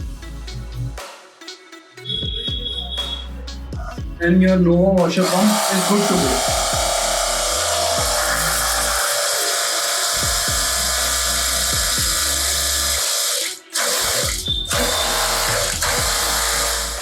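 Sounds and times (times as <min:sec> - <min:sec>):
electronic music with bass beat: 0:00.0 - 0:17.0
pressure washer running: 0:05.2 - 0:17.0.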